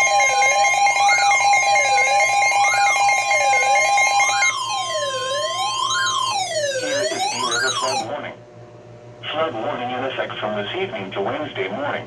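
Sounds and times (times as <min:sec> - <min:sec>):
fast pulsing tone: 0:00.0 - 0:08.1
rising and falling siren wail: 0:00.0 - 0:08.1
two-tone alert signal: 0:00.0 - 0:08.1.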